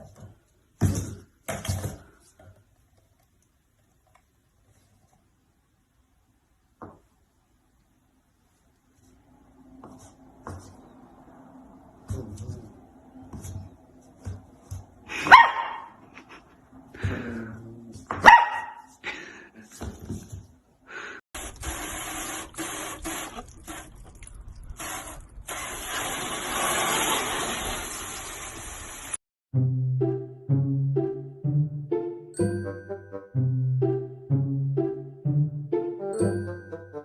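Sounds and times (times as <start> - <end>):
dog barking: 15.2 - 16.0, 18.1 - 18.9
dog yipping: 15.2 - 16.0, 18.2 - 18.9.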